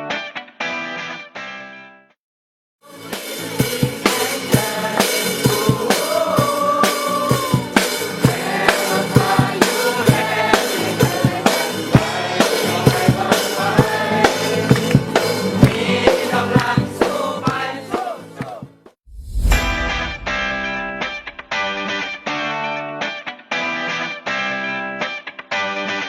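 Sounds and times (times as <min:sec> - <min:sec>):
song with singing voices: 0:02.8 - 0:18.7
drum kit beat: 0:02.9 - 0:17.7, 0:19.5 - 0:21.6.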